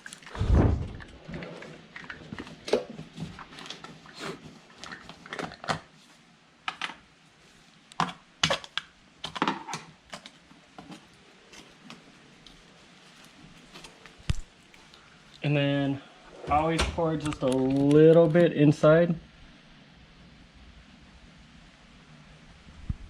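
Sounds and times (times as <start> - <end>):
plastic bottle clicking and crackling: 4.8 - 5.9.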